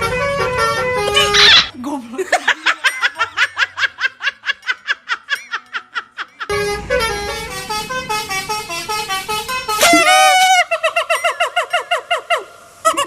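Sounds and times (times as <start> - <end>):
multi-tone bus horn tune: 0.0 - 1.6, 6.5 - 10.8
low engine rumble: 6.4 - 11.2.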